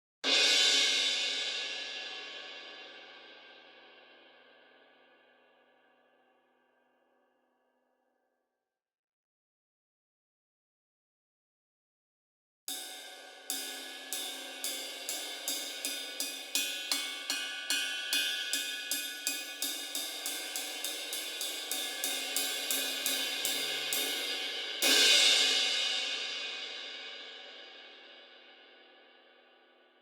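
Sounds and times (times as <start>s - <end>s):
ringing cymbal crash: 12.7s - 27.8s
cymbal struck with drumstick: 12.7s - 28.2s.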